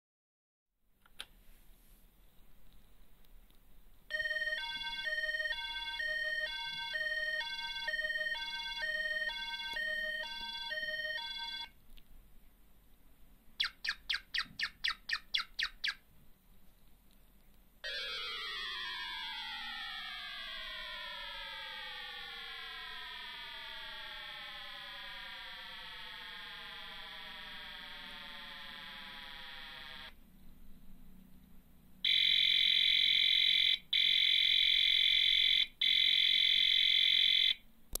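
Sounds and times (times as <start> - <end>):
buzzy electronic alarm tone: 4.1 - 11.7, 17.8 - 30.2, 32.1 - 37.6
buzzy chip tone chord: 17.8 - 30.1
electronic chirps falling in pitch: 17.8 - 30.1.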